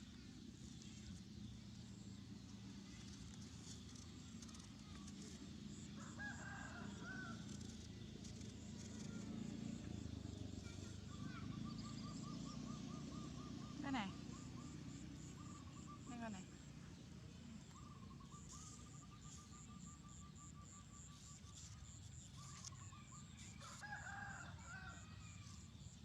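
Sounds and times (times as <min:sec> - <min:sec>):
distant rooster crowing: 0:05.7 - 0:07.5, 0:23.4 - 0:25.6.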